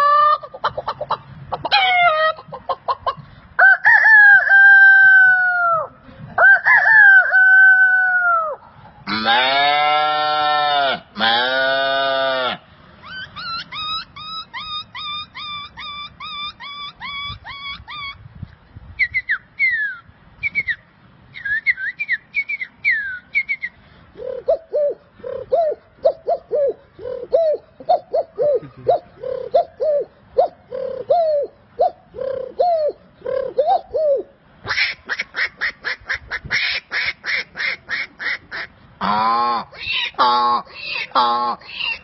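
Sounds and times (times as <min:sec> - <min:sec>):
person imitating bird calls: 0:00.0 - 0:03.1, 0:07.9 - 0:18.3, 0:21.4 - 0:36.3, 0:39.0 - 0:42.0.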